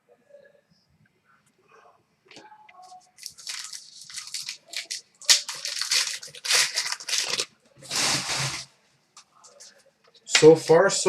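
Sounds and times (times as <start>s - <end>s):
wrapper tearing and crinkling: 3.2s - 8.7s.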